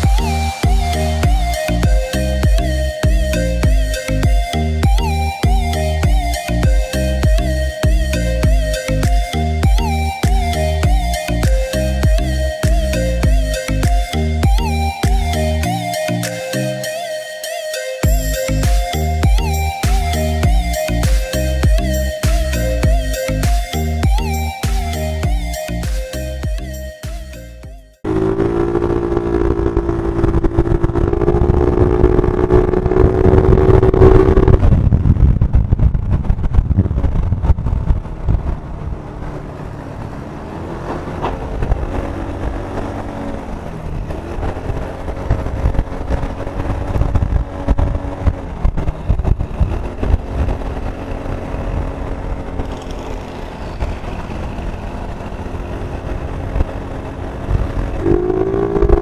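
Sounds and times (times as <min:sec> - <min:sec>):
vehicle engine running: 0:00.0 - 0:16.8, 0:18.0 - 0:59.0
low wind rumble: 0:28.0 - 0:59.0.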